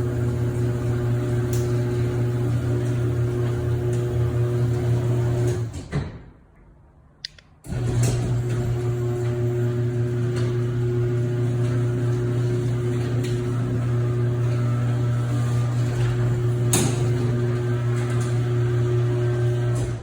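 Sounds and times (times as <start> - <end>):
garage door opener motor hum: 0.0 - 6.2, 7.6 - 20.0.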